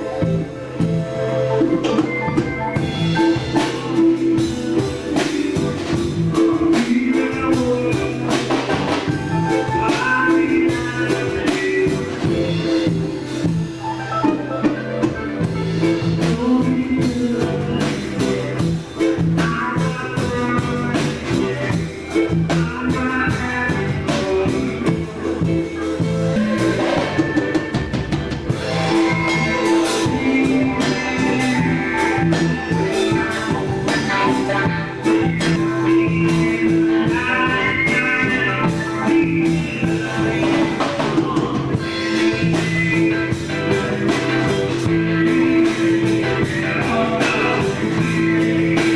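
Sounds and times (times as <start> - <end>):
band music with drums and guitar: 0.0 - 48.9
person singing: 0.0 - 48.9.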